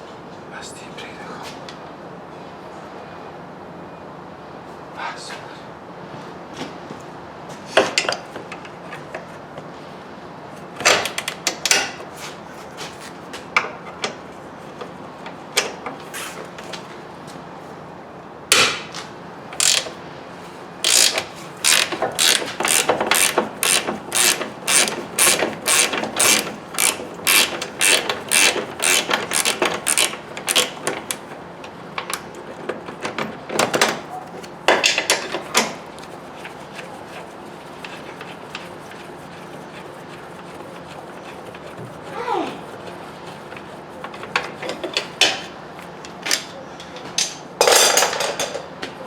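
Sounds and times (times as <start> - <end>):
ratchet wrench clicking: 19.6 - 20.0, 20.8 - 31.2.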